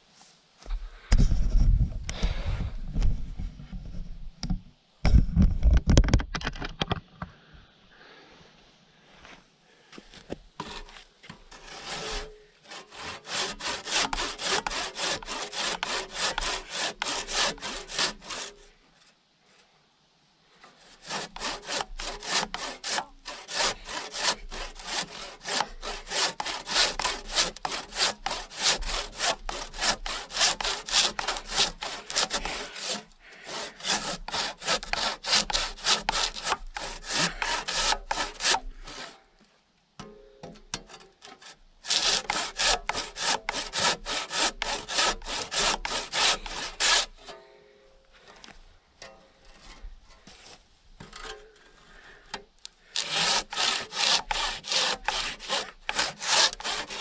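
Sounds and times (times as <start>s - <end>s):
handsaw cutting through log: 10.6s - 18.7s, 20.8s - 39.2s, 41.4s - 47.3s, 52.8s - 57.0s.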